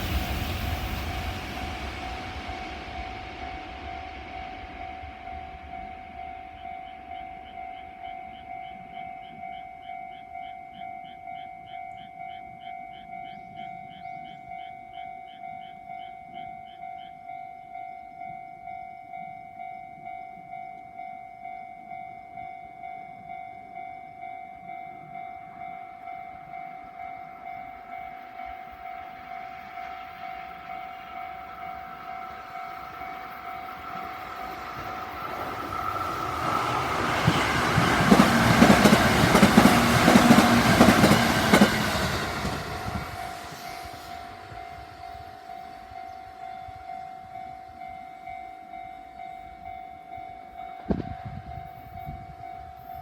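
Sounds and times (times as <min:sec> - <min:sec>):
level crossing warning bell: 0:05.0 - 0:53.0
train wheels clattering over rails: 0:29.1 - 0:45.5.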